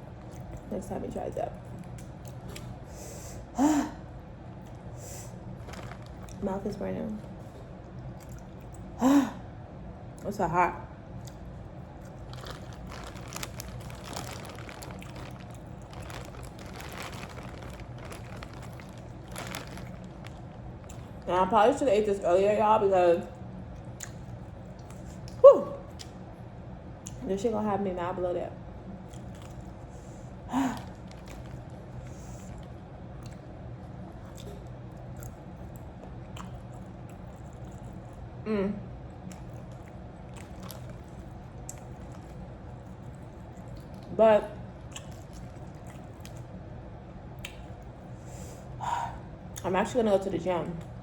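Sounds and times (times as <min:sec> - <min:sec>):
steady low hum: 0:00.0 - 0:51.0
chewing and mouth smacks: 0:00.2 - 0:00.7, 0:01.6 - 0:02.8, 0:07.4 - 0:08.9, 0:11.2 - 0:21.3, 0:23.7 - 0:26.2, 0:29.0 - 0:30.2, 0:30.8 - 0:38.4, 0:39.1 - 0:44.1, 0:44.8 - 0:46.6, 0:47.3 - 0:48.0
small clicks and crackles: 0:05.6 - 0:06.4, 0:12.3 - 0:21.3.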